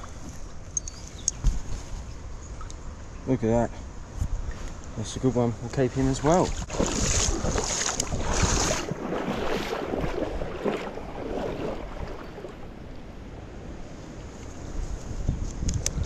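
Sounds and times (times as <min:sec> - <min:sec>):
wind on microphone: 0:06.0 - 0:12.8, 0:14.6 - 0:16.0
river water rushing: 0:06.4 - 0:12.9.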